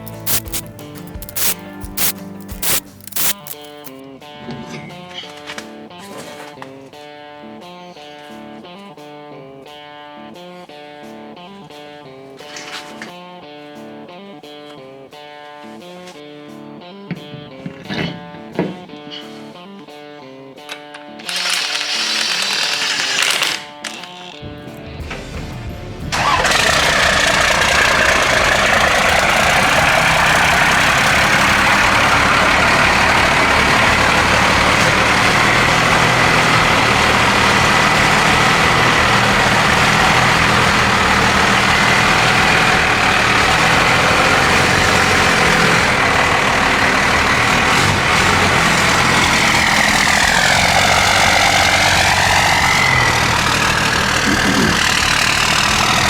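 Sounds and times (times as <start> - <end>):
diesel engine starting and idling: 0.0 - 4.0, 21.2 - 56.0.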